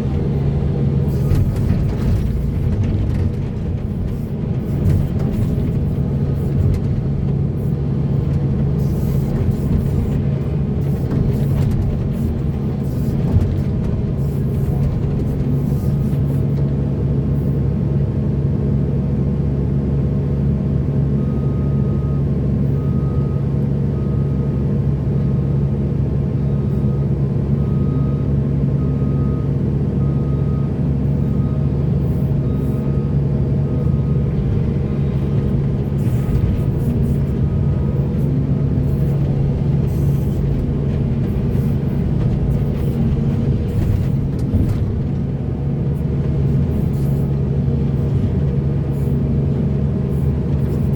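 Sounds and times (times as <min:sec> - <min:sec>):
diesel machinery engine hum: 0:00.0 - 0:50.9
reversing alarm beeping: 0:21.2 - 0:24.7, 0:26.4 - 0:34.3.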